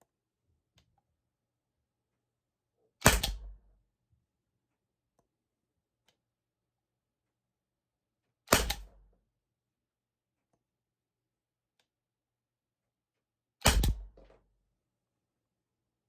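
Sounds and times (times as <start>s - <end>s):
launcher shots popping: 13.7s - 14.1s.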